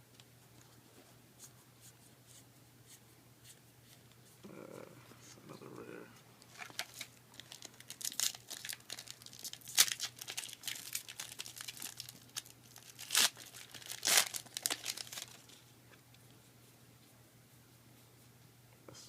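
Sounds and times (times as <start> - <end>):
foil wrapper crinkling and tearing: 6.5 - 15.6.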